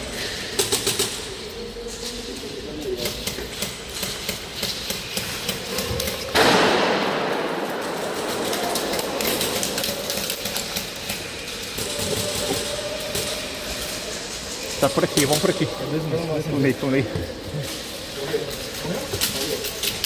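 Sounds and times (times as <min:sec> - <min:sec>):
airsoft guns firing: 0:04.1 - 0:12.8.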